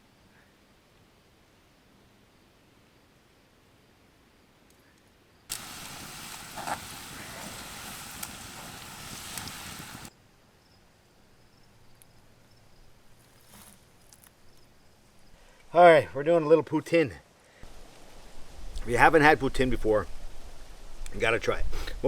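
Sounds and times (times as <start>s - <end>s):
oil sizzling with fries: 5.5s - 10.1s.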